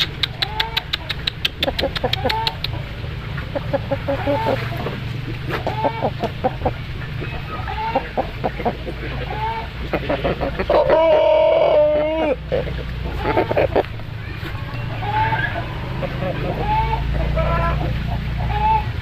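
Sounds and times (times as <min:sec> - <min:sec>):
rooster clucking: 0:00.0 - 0:19.0
rooster crowing: 0:10.7 - 0:12.4.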